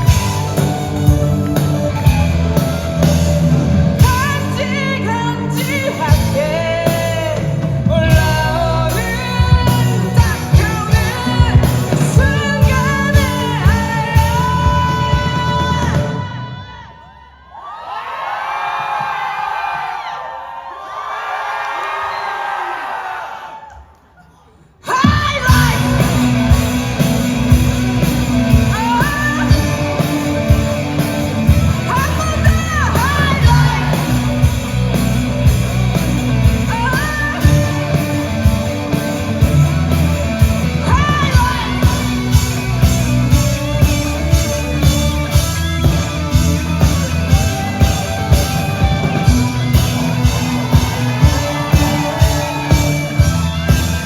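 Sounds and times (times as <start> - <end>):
steady drum beat: 0.0 - 16.1, 25.0 - 54.0
rock band music: 0.0 - 16.8, 24.9 - 54.0
person singing: 4.0 - 17.0, 28.1 - 34.9.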